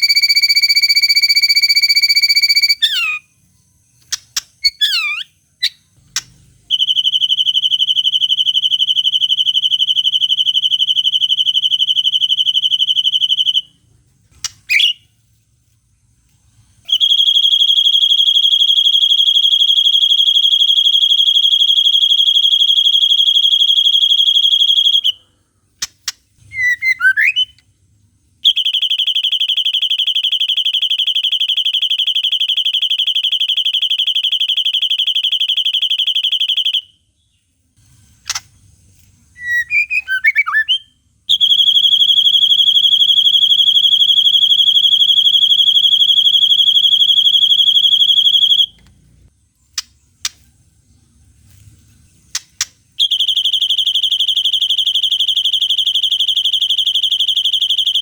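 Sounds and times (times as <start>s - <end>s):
bird buzzy trills: 0.0s - 3.4s, 4.0s - 7.1s.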